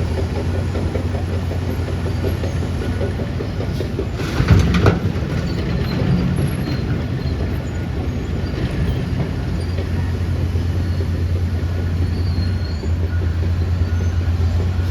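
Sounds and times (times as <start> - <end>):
rattling clatter: 0.0 - 11.1
heavy diesel machinery engine drone: 0.0 - 14.9.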